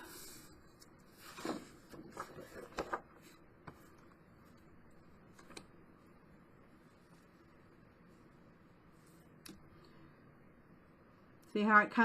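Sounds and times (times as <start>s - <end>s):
soft cardstock rustles: 0.3s - 9.3s.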